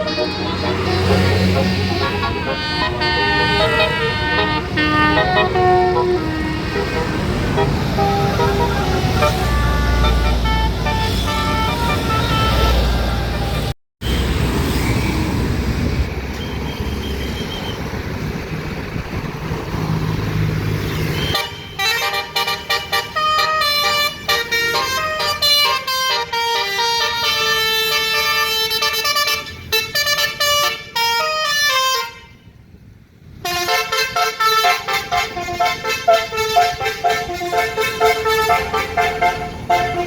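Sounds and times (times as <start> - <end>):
bus musical horn tune: 0.0 - 13.7, 21.2 - 32.5, 33.4 - 40.0
engine and traffic noise: 0.0 - 40.0.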